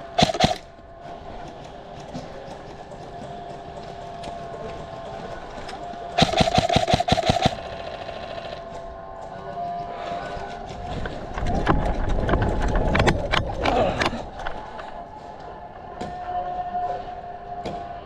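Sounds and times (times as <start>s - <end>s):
airsoft rifle full-auto burst: 0.0s - 0.7s, 6.2s - 8.6s.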